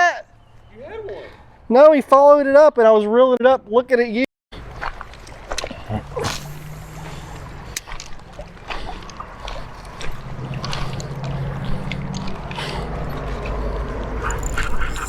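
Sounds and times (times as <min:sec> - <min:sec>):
creek water sloshing and trickling: 0:04.6 - 0:15.0.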